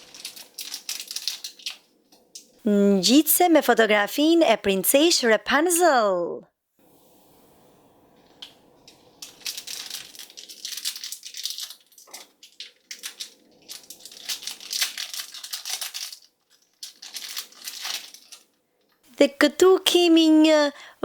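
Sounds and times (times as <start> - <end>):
plastic packaging crinkling and tearing: 0.0 - 2.6, 8.3 - 19.0.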